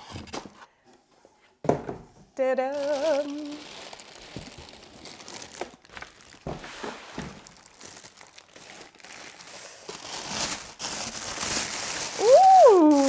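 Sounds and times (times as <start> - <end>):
packaging crinkling: 2.7 - 13.0.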